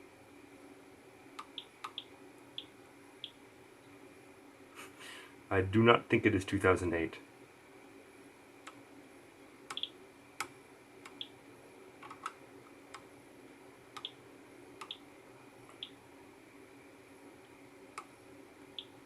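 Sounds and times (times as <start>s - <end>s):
fingers tapping touch screen: 1.4s - 3.4s.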